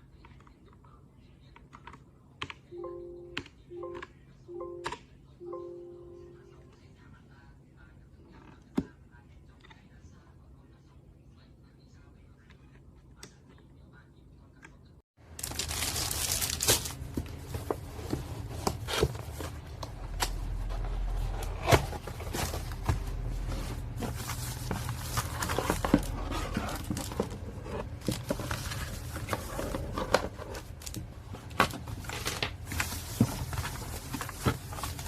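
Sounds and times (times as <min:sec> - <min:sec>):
packaging crinkling and rustling: 0:15.3 - 0:35.0.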